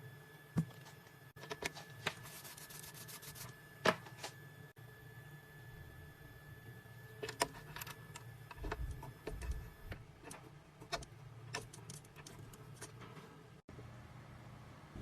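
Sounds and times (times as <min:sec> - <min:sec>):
low machine hum: 0:00.0 - 0:15.0
thin steady whine: 0:00.0 - 0:15.0.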